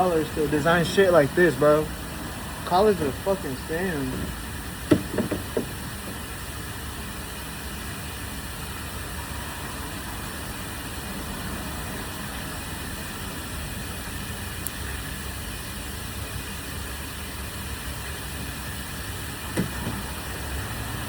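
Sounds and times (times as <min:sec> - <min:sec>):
sharp knocks: 0:04.9 - 0:06.2, 0:19.5 - 0:20.1.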